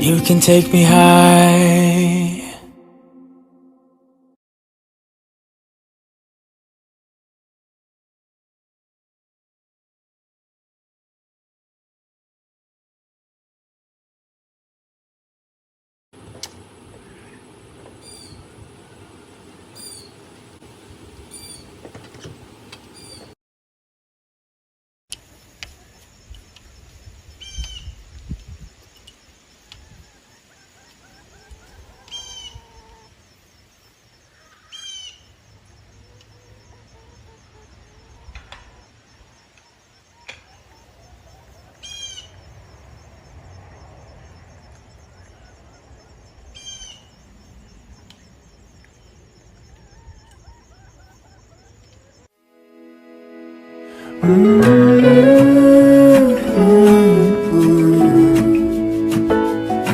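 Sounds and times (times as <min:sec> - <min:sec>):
lower gliding bird notes: 0:00.0 - 0:04.3, 0:52.6 - 0:59.9
birds high call phrases: 0:16.6 - 0:23.4.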